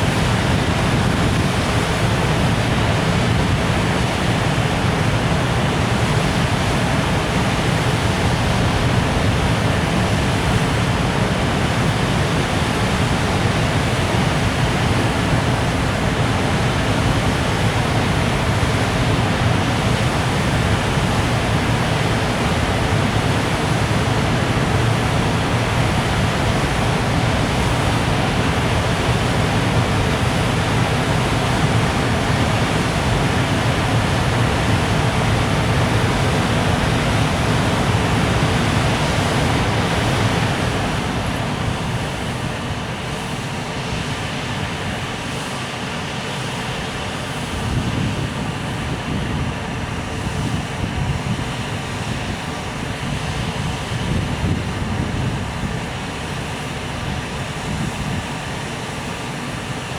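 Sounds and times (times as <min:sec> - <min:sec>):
freight train rumbling on rails: 0:00.0 - 0:45.0.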